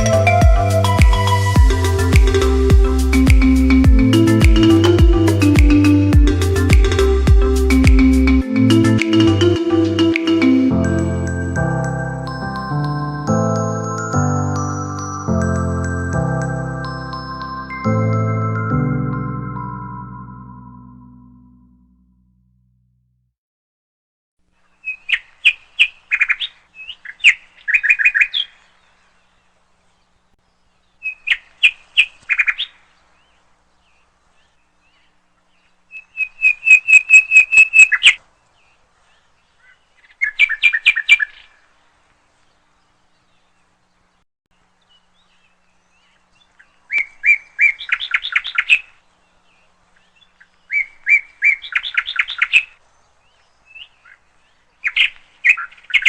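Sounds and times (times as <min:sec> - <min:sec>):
bird chirping rapidly: 0:24.7 - 0:28.6, 0:35.7 - 0:38.2, 0:44.9 - 0:54.2.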